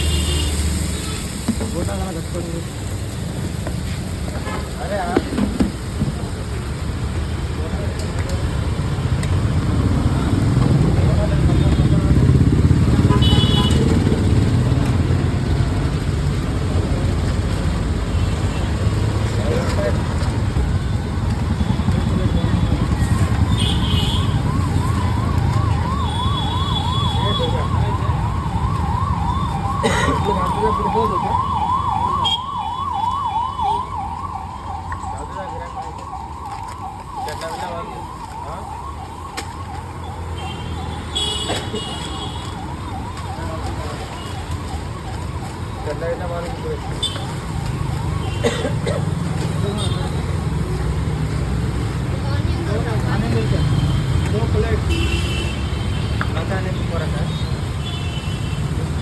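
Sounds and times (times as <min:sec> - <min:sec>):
motorcycles passing: 0:00.0 - 0:59.0
road traffic rumble: 0:00.0 - 0:59.0
siren yelping: 0:21.2 - 0:41.1, 0:42.2 - 0:48.4.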